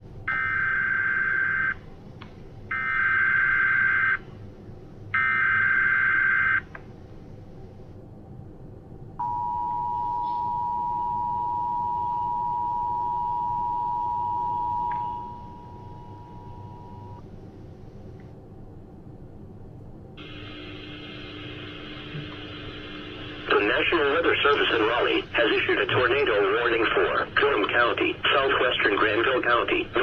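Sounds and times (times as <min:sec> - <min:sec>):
two-tone attention signal: 0:09.2 - 0:17.2.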